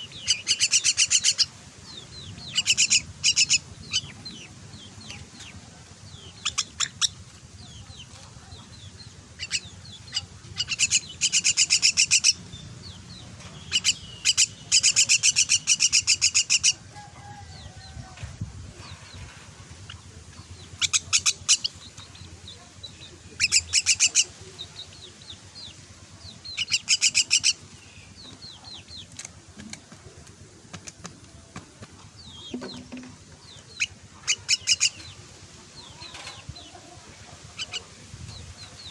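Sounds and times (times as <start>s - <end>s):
young bird begging calls: 2.4s - 4.5s, 26.4s - 27.6s.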